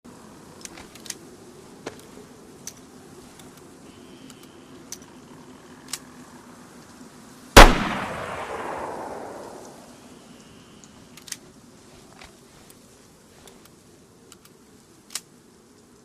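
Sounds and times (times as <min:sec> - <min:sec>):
faint clicks: 0:00.5 - 0:07.0, 0:07.9 - 0:16.0
pistol shot with echo: 0:07.6 - 0:10.0.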